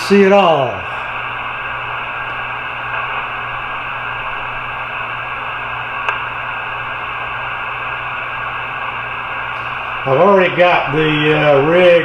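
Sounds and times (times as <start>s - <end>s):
low hum: 0.0s - 12.0s
radio static hiss: 0.0s - 12.0s
click: 2.3s - 3.3s, 6.0s - 6.3s.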